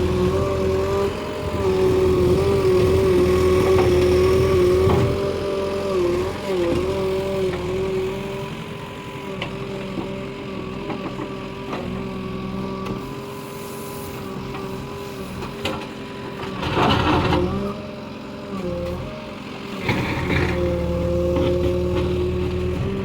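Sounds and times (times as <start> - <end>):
diesel engine running: 0.0 - 23.0.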